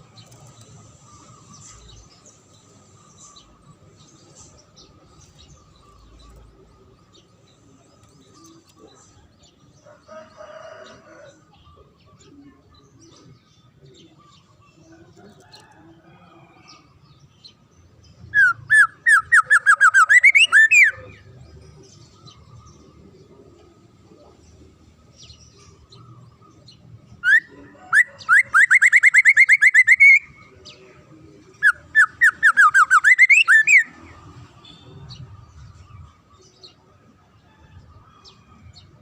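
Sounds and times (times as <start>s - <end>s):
songbird whistling rising notes: 18.4s - 21.1s, 27.2s - 30.4s, 31.6s - 34.0s.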